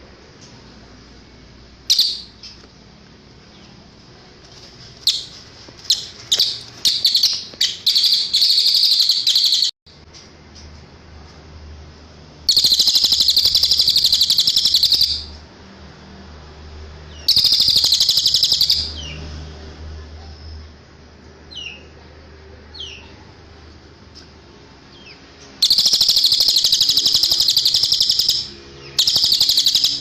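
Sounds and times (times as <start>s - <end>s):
bird chirping and trilling: 1.9s - 2.6s, 5.0s - 9.8s, 12.4s - 15.4s, 17.1s - 19.2s, 24.9s - 30.0s.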